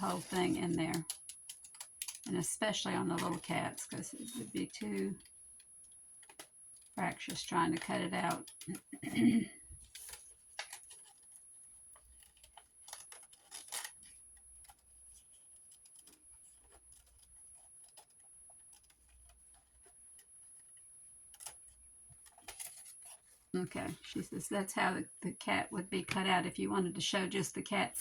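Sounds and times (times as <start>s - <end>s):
paper rustling: 0.0s - 5.3s, 6.2s - 20.3s, 21.3s - 24.4s
scissors snipping paper: 0.0s - 5.3s, 6.2s - 20.3s, 21.3s - 23.2s.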